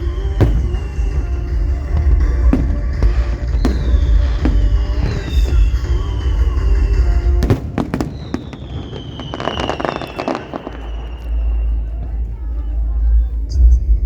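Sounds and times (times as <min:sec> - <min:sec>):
fireworks crackling: 0:00.0 - 0:12.8
music: 0:00.0 - 0:14.0
deep rumbling booms: 0:00.1 - 0:08.6.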